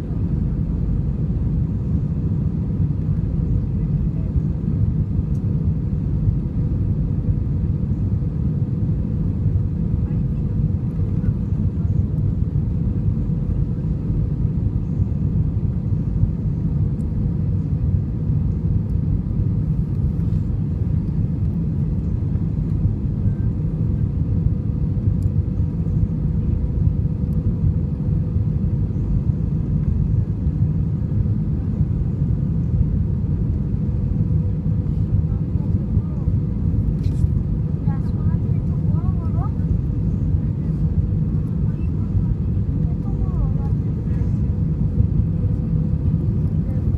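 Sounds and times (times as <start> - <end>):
airplane cabin engine rumble: 0.0 - 46.9.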